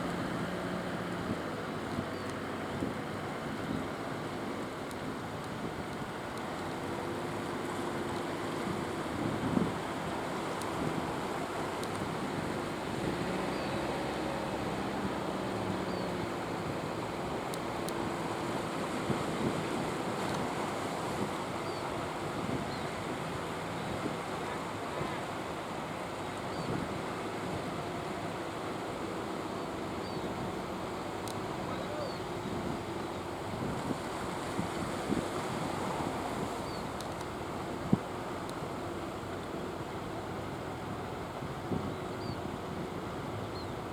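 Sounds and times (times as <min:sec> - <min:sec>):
faint boat engine hum: 0:00.0 - 0:43.9
sea surf rushing: 0:00.0 - 0:43.9
wind on microphone: 0:31.7 - 0:37.0.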